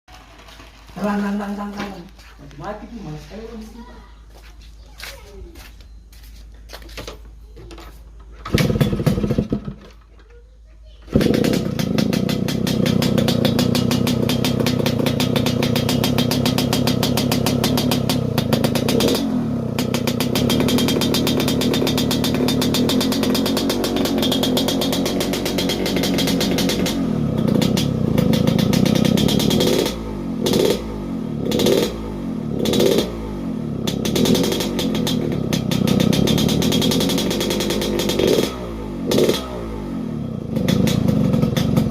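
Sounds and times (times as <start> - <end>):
two-stroke motorcycle engine revving: 8.4 - 9.9, 11.1 - 41.9.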